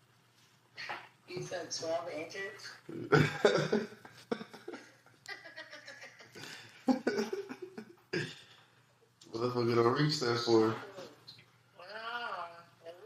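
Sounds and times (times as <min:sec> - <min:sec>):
people laughing: 0:03.1 - 0:08.0.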